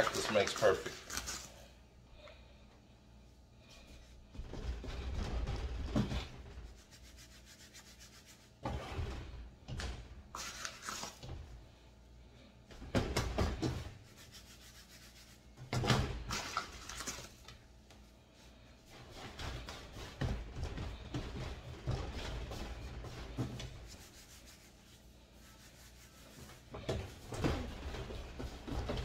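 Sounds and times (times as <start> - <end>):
hands rubbing dough on floured peel: 6.6 - 8.6, 10.4 - 11.2, 13.8 - 15.6, 16.9 - 27.3.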